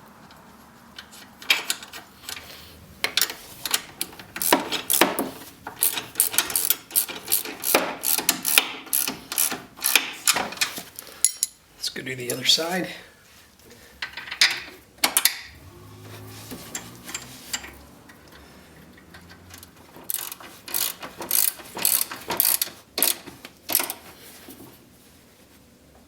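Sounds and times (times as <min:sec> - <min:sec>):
ratcheting clicks of hand tools: 0:01.0 - 0:11.6, 0:16.7 - 0:24.1.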